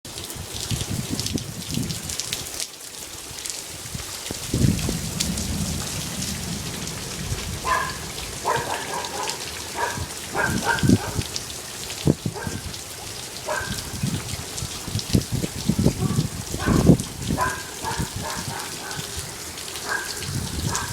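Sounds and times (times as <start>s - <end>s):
heavy rain: 0.1s - 20.9s
hail pelting: 3.5s - 20.9s
low rumbles: 4.5s - 12.4s.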